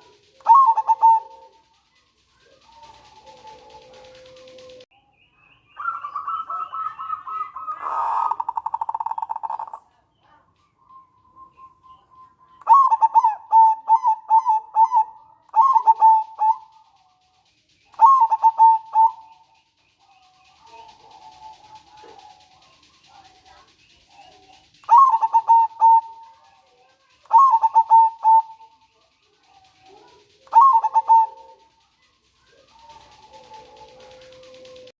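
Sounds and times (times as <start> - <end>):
dove staccato coos: 0.0 - 4.8, 12.6 - 26.4, 27.1 - 34.9
dove rattling call: 0.0 - 4.9, 5.8 - 34.9.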